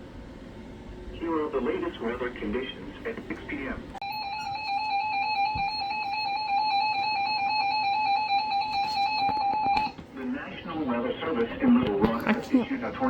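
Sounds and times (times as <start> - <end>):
warbling electronic alarm tone: 4.0 - 9.9.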